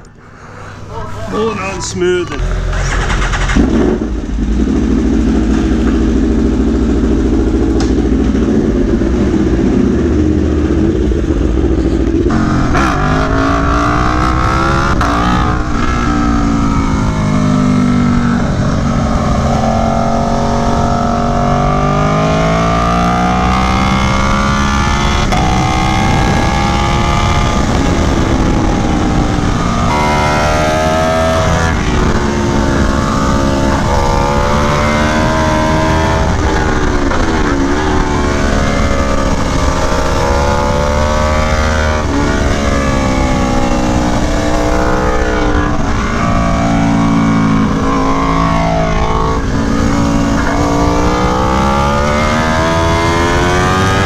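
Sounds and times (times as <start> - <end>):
motorcycle engine revving: 2.3 - 54.0.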